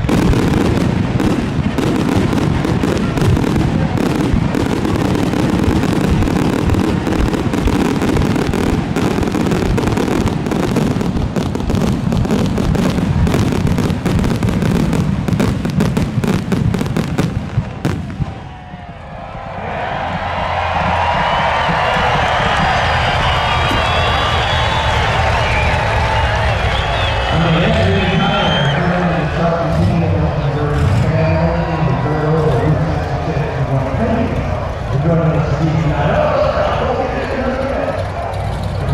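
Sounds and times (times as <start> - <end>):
unmuffled engines crackling and popping: 0.0 - 19.0, 32.4 - 38.9.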